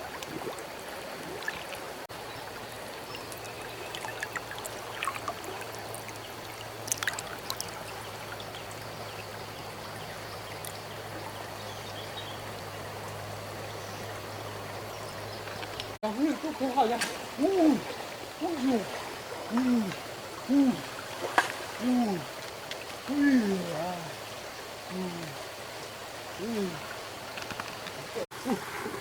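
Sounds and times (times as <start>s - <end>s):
water flowing: 0.0s - 29.0s.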